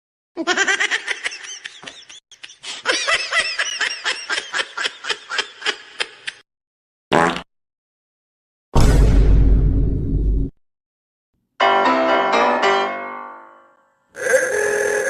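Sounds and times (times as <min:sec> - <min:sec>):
person laughing: 0:00.4 - 0:06.4.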